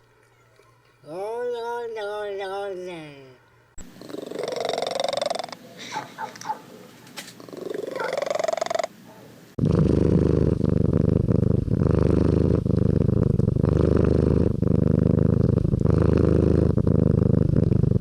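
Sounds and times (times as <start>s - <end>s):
cat purring: 3.8s - 6.0s, 7.2s - 8.9s, 9.5s - 18.0s.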